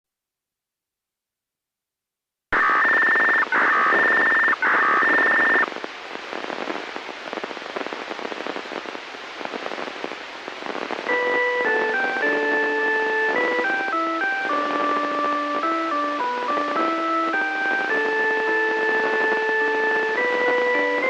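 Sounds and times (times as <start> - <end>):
rapidly stepping radio tones: 2.6 - 5.8
radio channel hiss: 2.6 - 21.0.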